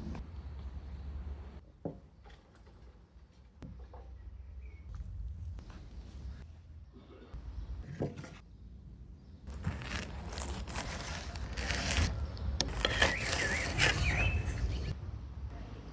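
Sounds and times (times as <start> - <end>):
food scraping and rustling: 9.5 - 14.9.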